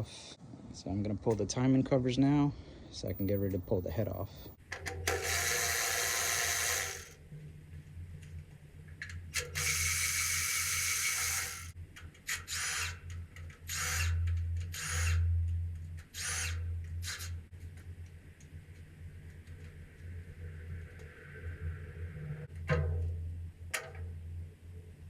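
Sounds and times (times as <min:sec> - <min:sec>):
power driver spinning bolts: 0:04.6 - 0:07.2, 0:09.2 - 0:15.2.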